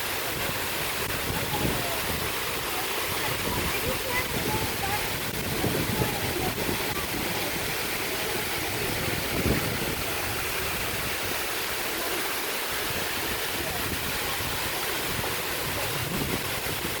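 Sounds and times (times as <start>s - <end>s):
waterfall rushing: 0.0s - 17.0s.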